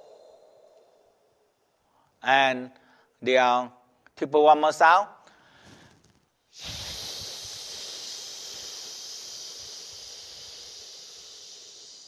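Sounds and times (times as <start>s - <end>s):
man exhaling a long hiss: 0.0s - 1.3s, 6.5s - 12.0s.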